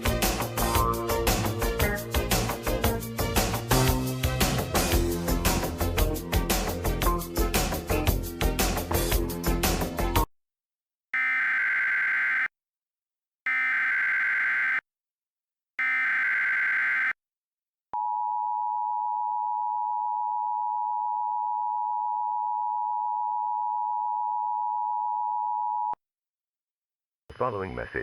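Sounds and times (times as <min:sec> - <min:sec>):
screeching digital data tones: 0:11.2 - 0:12.5, 0:13.5 - 0:14.8, 0:15.8 - 0:17.2.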